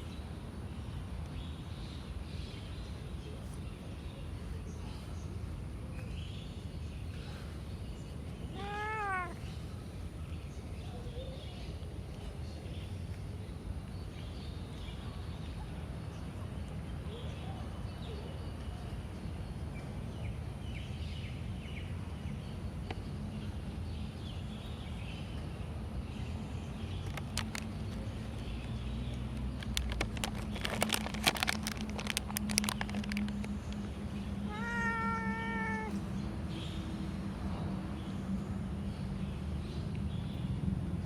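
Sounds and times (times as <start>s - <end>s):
cat meowing: 8.5s - 9.4s, 34.5s - 36.0s.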